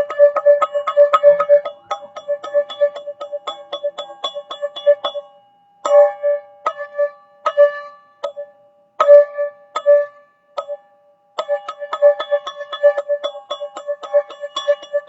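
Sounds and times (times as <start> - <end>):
tuned percussion tube ringing: 0.0 - 15.0.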